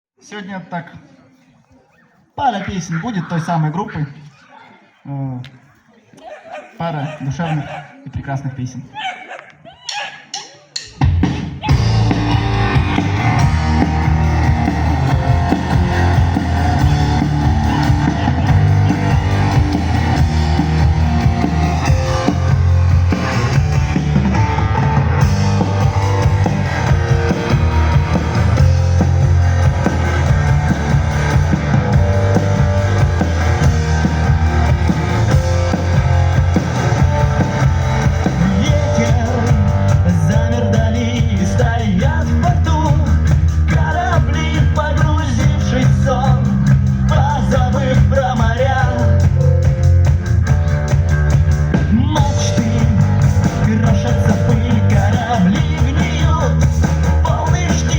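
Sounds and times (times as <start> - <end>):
drum kit: 10.3 - 57.9
bass guitar: 11.0 - 57.9
electric guitar: 11.7 - 57.9.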